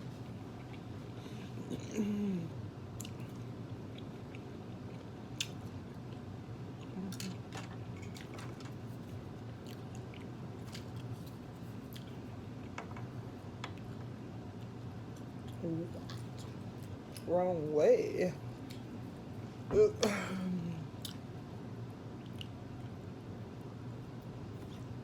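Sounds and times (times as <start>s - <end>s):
steady low hum: 0.0s - 25.0s
chewing food: 0.5s - 1.0s, 3.0s - 12.8s, 13.7s - 17.3s, 22.2s - 23.0s.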